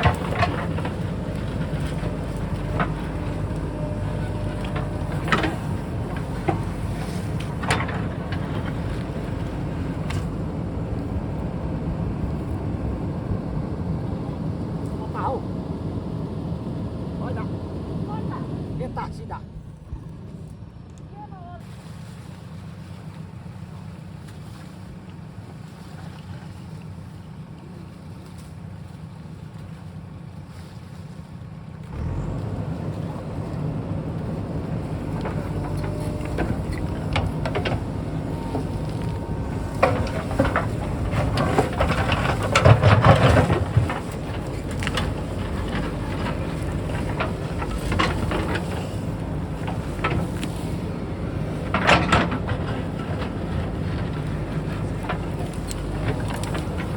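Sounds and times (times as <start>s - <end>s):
knocks and clatter: 0.0s - 10.5s, 32.0s - 56.9s
backhoe diesel engine running: 0.0s - 21.8s, 22.4s - 56.9s.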